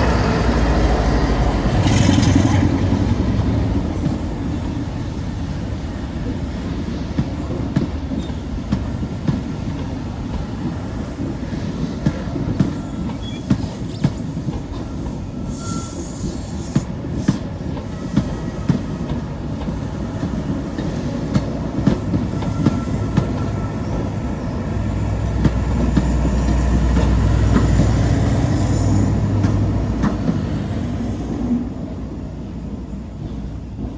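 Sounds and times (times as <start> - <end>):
train wheels clicking over rail joints: 0.0 - 4.8, 16.2 - 24.5, 25.2 - 30.6
faint wheel squeal: 12.7 - 14.4, 15.4 - 16.8.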